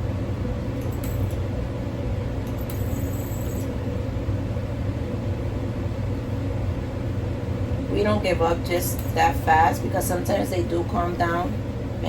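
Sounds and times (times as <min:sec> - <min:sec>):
low machine hum: 0:00.0 - 0:12.0
dental scaler whine: 0:02.4 - 0:03.8.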